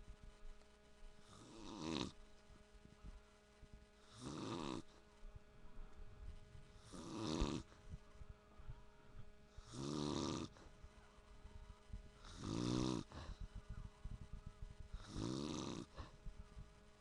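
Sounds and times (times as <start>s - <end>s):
man snoring: 1.3s - 2.2s, 4.1s - 4.9s, 6.8s - 7.7s, 9.6s - 10.6s, 12.2s - 13.4s, 15.0s - 16.1s.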